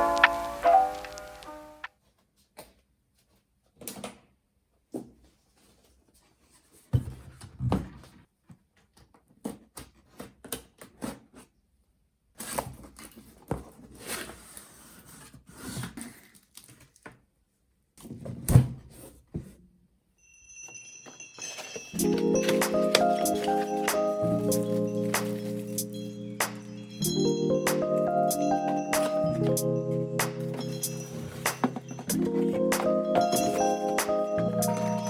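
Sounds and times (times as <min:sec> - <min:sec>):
objects clicking and rustling: 0:20.7 - 0:35.0.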